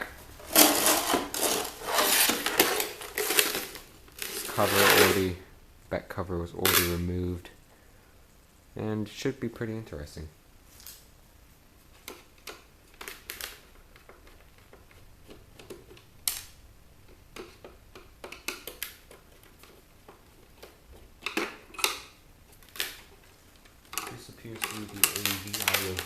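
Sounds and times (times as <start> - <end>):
plastic and metal parts clicking: 17.1 - 26.0.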